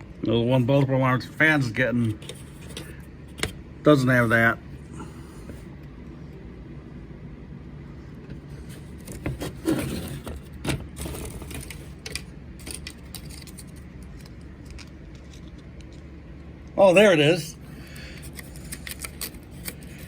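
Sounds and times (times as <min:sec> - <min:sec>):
steady low hum: 0:00.0 - 0:20.0
packaging rustling: 0:08.4 - 0:15.6.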